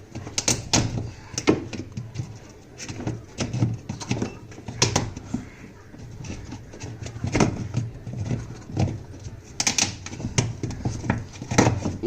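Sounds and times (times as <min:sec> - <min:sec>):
knocks and scraping of tools: 0:00.0 - 0:12.0.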